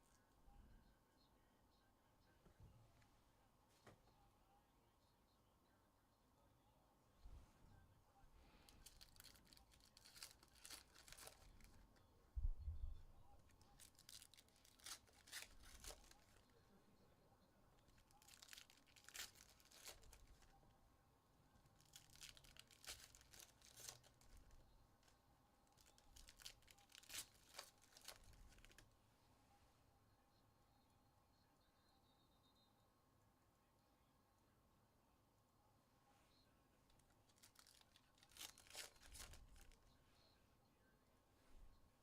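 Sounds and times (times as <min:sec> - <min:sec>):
card pack wrappers tearing: 0:08.7 - 0:12.0, 0:13.5 - 0:16.4, 0:17.8 - 0:20.5, 0:21.8 - 0:25.1, 0:25.7 - 0:28.8, 0:37.0 - 0:39.8.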